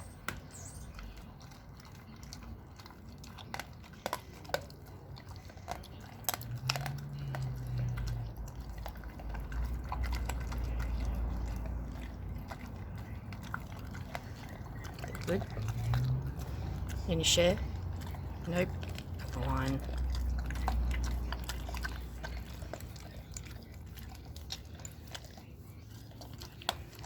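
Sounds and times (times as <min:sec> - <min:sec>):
dog chewing meat and bone: 0:00.0 - 0:27.0.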